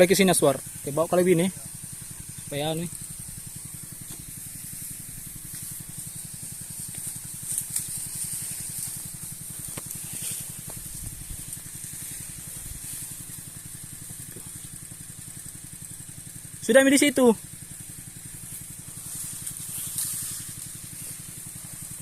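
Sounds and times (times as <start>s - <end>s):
spray hissing from nozzle: 0.0s - 16.0s
small engine pulsing: 0.0s - 22.0s.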